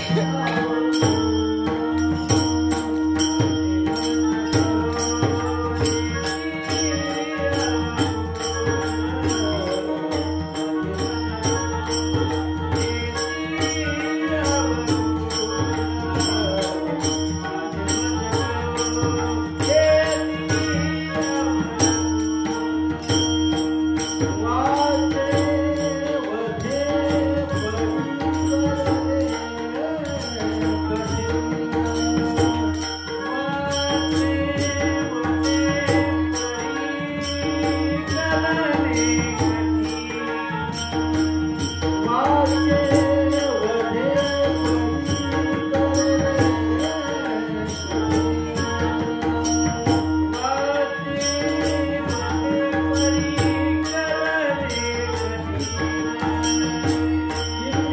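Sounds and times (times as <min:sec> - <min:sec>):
jingling percussion: 0:00.0 - 0:57.9.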